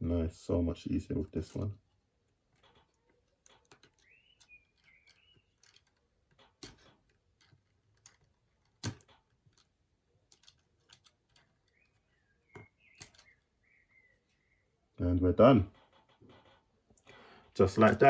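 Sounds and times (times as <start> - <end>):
bird chirping faintly: 2.6 - 6.3, 10.1 - 16.8.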